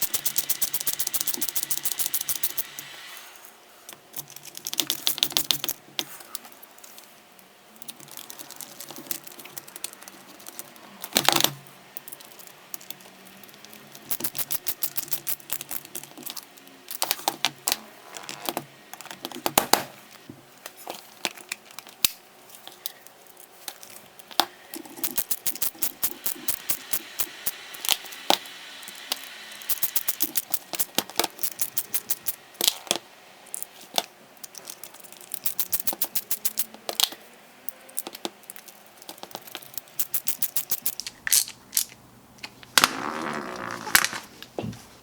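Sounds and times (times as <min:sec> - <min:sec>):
rapid clicking of drill parts: 0:00.0 - 0:02.9, 0:04.0 - 0:05.8, 0:07.8 - 0:17.5, 0:24.2 - 0:32.4, 0:34.4 - 0:37.1, 0:37.7 - 0:41.9.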